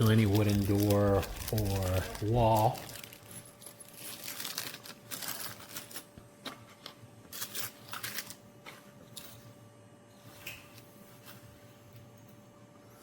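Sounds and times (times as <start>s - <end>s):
packaging rustling: 0.0s - 8.4s.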